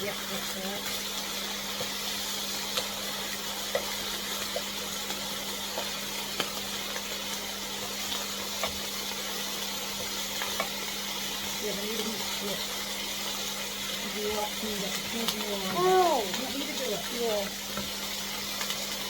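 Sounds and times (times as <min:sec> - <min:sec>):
chicken frying in oil: 0:00.0 - 0:19.0
sharp pops from frying: 0:00.0 - 0:19.0.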